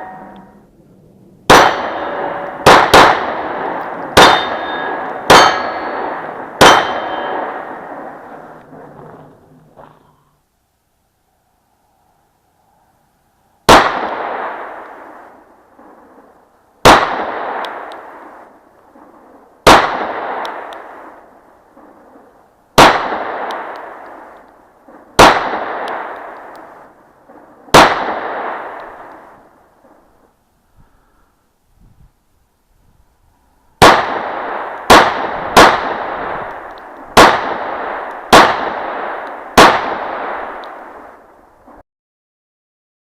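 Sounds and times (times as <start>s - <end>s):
pistol shots with echo: 1.4s - 8.6s, 13.7s - 16.2s, 16.8s - 30.1s, 33.8s - 41.8s.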